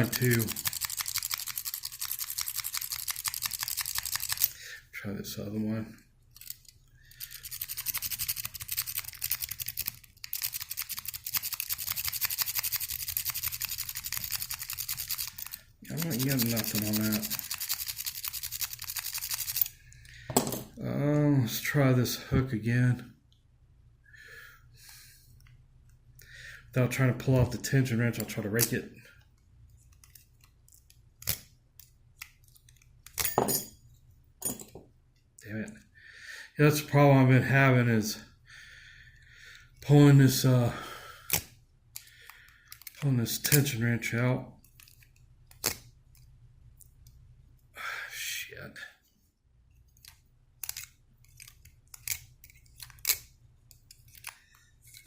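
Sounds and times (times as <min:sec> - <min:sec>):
lock pick scratching: 0:06.3 - 0:19.7, 0:50.0 - 0:55.0
lock pick scraping and clicking: 0:50.0 - 0:55.0.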